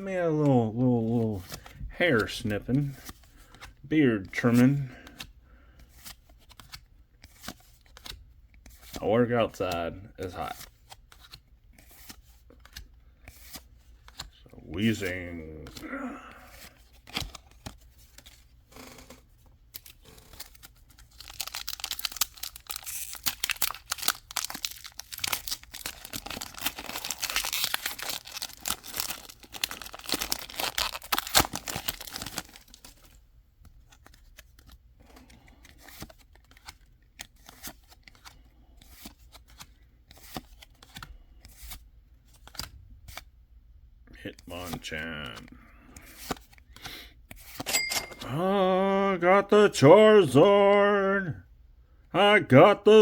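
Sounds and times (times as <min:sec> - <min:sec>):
foil wrapper tearing and crinkling: 0:21.1 - 0:32.9.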